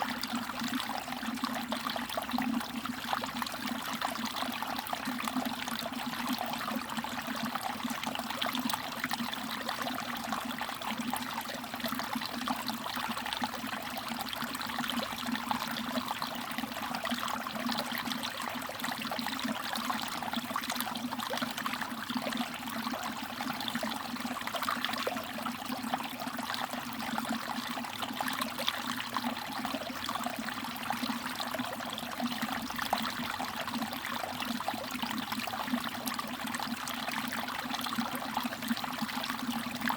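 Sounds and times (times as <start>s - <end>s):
stream water trickling: 0.0s - 39.9s.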